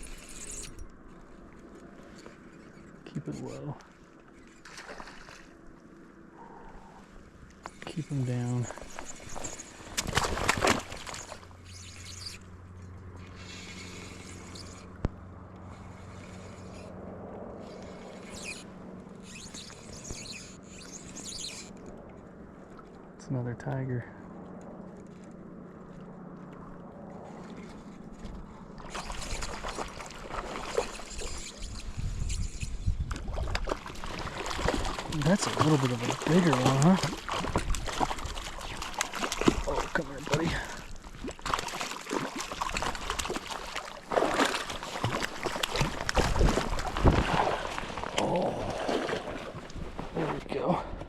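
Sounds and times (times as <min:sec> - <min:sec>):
water splashing at shore: 0:04.6 - 0:06.0, 0:07.8 - 0:12.3, 0:26.4 - 0:31.6, 0:33.1 - 0:50.6.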